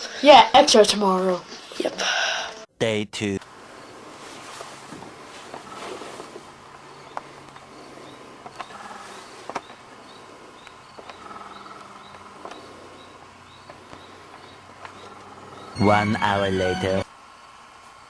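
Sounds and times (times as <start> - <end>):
steady low hum: 2.6 - 18.0.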